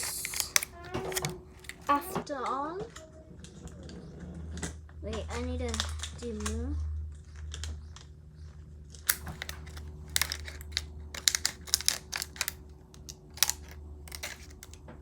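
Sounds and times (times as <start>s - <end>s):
scissors snipping plastic bottle: 0.0s - 2.1s, 9.1s - 14.8s.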